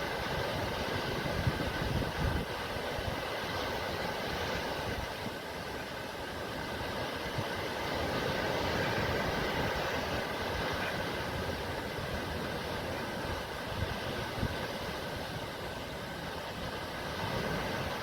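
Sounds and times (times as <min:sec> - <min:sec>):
sea surf waves: 0:00.0 - 0:18.0.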